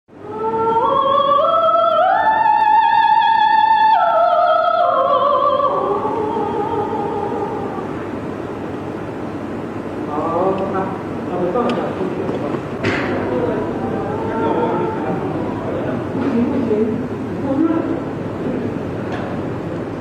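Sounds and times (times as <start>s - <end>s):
person singing operatically: 0.2s - 7.9s, 13.3s - 16.1s.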